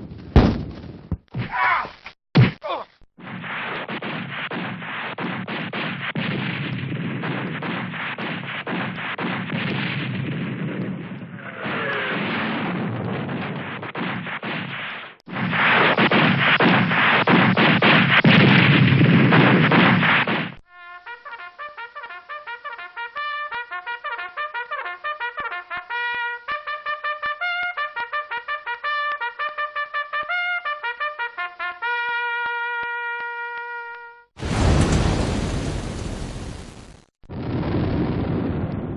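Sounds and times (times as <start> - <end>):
rapid gunfire and blasts: 3.2 - 20.6.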